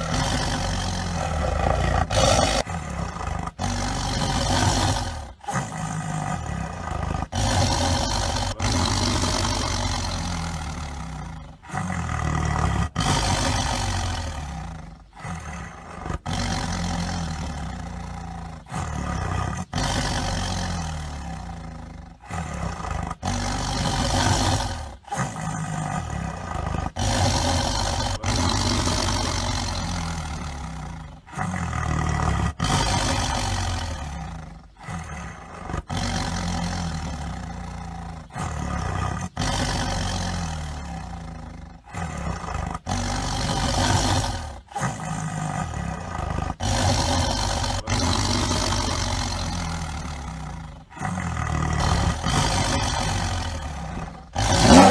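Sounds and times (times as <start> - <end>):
tiger roaring: 0.0 - 54.9.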